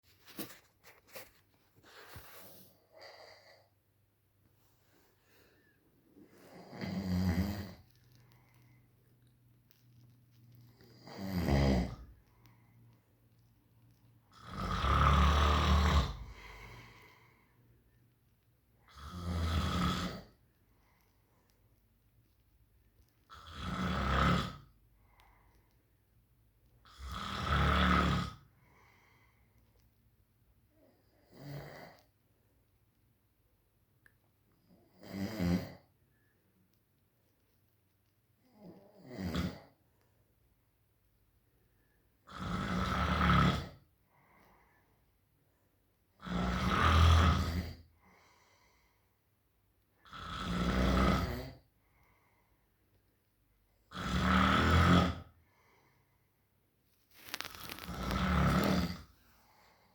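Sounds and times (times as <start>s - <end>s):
soft breaths out: 4.6s - 6.7s, 16.2s - 18.0s, 25.0s - 26.0s, 28.6s - 29.8s, 44.0s - 45.1s, 48.0s - 49.3s, 51.8s - 52.9s, 55.4s - 59.9s
heavy rasping snoring: 6.4s - 7.9s, 10.8s - 12.1s, 14.3s - 17.1s, 18.8s - 20.4s, 23.3s - 24.7s, 26.8s - 28.5s, 31.2s - 32.0s, 34.9s - 35.9s, 38.6s - 39.7s, 42.2s - 43.8s, 46.2s - 47.9s, 50.0s - 51.7s, 53.9s - 55.3s, 57.2s - 59.2s.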